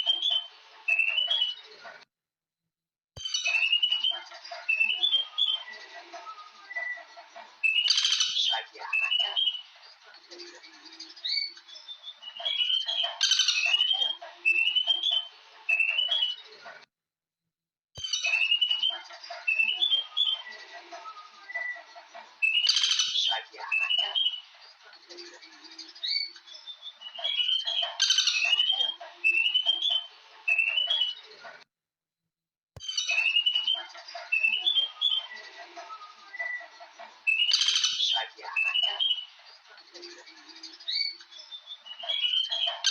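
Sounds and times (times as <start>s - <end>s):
birds chirping: 0.0s - 2.0s, 3.2s - 16.8s, 18.0s - 31.6s, 32.8s - 42.9s.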